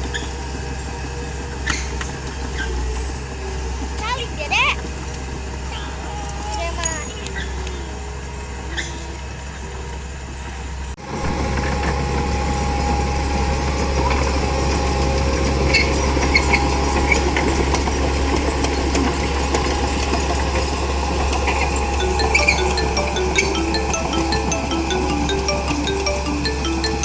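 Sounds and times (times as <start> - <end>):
bulldozer diesel engine running: 11.1 - 22.0.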